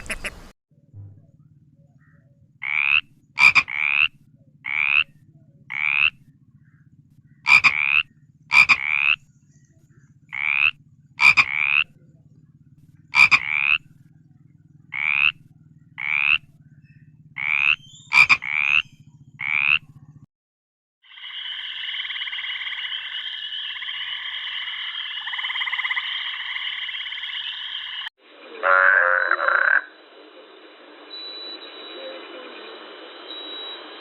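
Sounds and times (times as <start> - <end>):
faint low hum: 0.0 - 18.1
frog croaking: 2.0 - 9.3, 10.3 - 14.2, 14.8 - 16.7, 17.3 - 20.2, 21.0 - 30.2.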